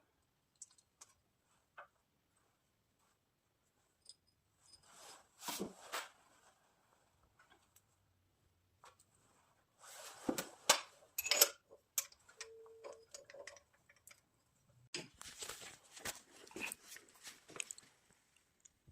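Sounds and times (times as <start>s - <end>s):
hand tools clinking: 11.2s - 14.3s.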